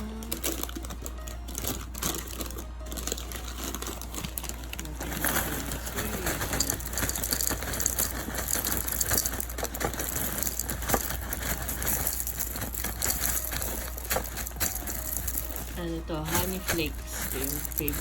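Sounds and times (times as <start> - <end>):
cereal poured into a bowl: 6.4 - 15.7.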